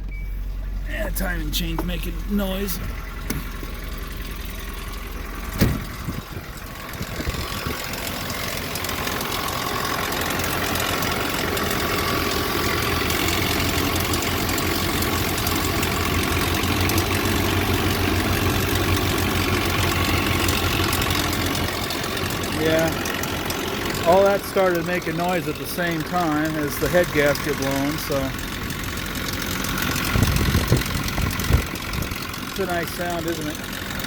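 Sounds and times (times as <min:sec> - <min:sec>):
engine idling roughly: 0:00.0 - 0:34.0
sharp engine knock: 0:03.1 - 0:04.8, 0:05.4 - 0:07.9.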